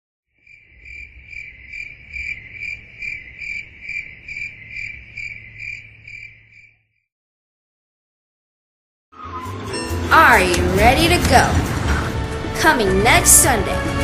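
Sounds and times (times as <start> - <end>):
cricket chirping: 0.4 - 7.1.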